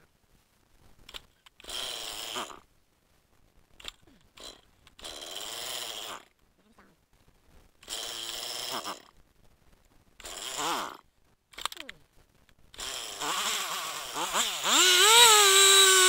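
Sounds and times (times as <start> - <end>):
chainsaw recoil starter pulls: 1.1 - 2.6, 3.8 - 6.3, 7.8 - 9.1, 10.2 - 11.8, 12.8 - 16.0.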